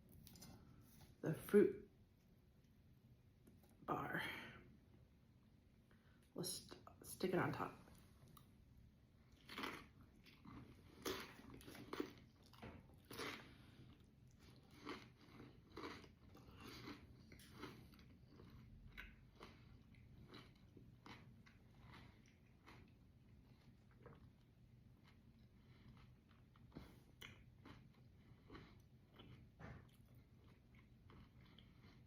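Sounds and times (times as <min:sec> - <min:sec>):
person chewing: 0:09.2 - 0:32.0.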